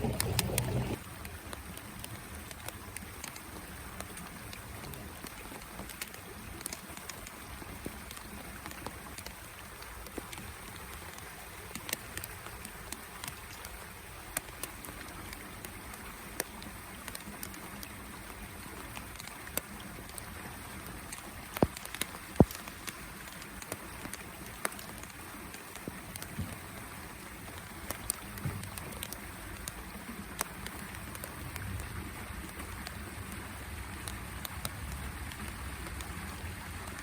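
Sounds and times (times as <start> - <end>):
rain hissing: 0.0 - 1.1
raindrops tapping close by: 0.0 - 37.0.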